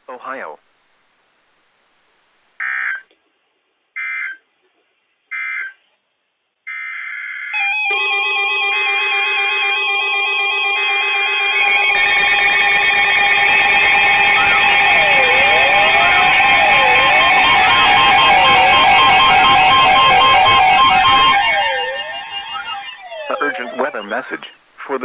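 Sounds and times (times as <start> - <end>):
weather radio alarms beeping: 7.6 - 25.0
alert data header: 9.3 - 24.5
screeching data bursts: 10.4 - 24.6.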